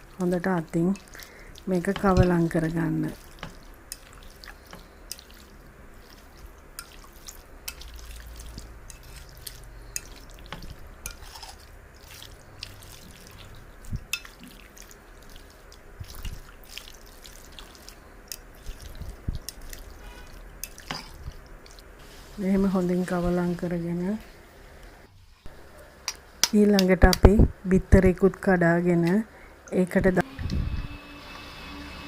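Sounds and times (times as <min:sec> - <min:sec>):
hands squelching chicken in marinade: 0:00.8 - 0:21.9.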